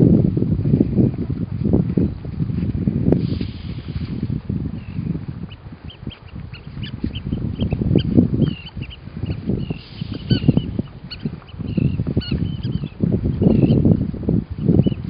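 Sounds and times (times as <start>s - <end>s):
low uneven rumble: 0.0s - 15.0s
seal chirps and trills: 4.8s - 13.8s.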